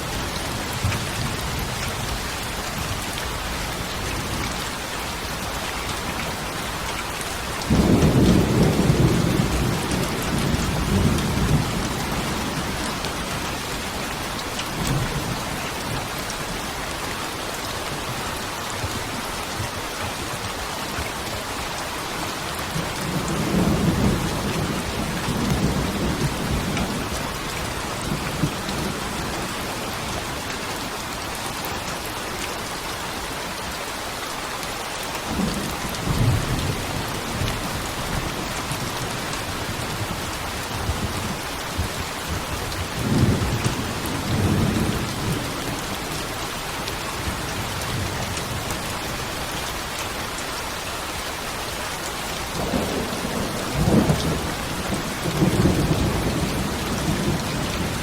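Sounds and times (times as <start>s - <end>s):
heavy rain: 0.0s - 58.0s
low rolling thunder: 7.6s - 13.0s, 23.0s - 27.2s, 40.8s - 45.8s, 52.6s - 58.0s.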